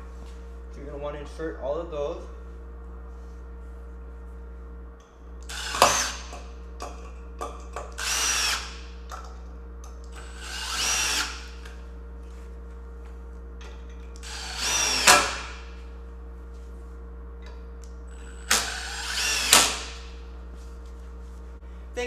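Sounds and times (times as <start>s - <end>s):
power drill driving screws: 5.4s - 6.4s, 7.9s - 8.9s, 10.1s - 11.7s, 14.2s - 15.7s, 18.1s - 20.2s.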